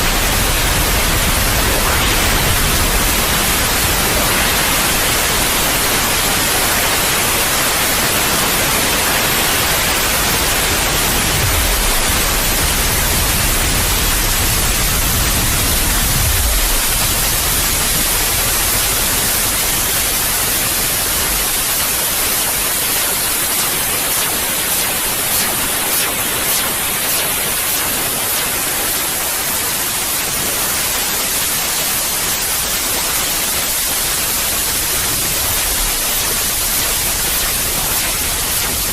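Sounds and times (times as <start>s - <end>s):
white noise hiss: 0.0s - 38.9s.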